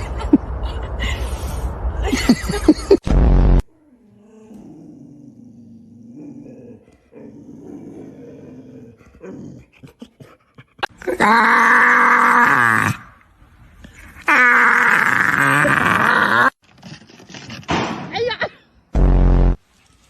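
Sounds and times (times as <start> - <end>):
dog growling: 4.1 - 13.0.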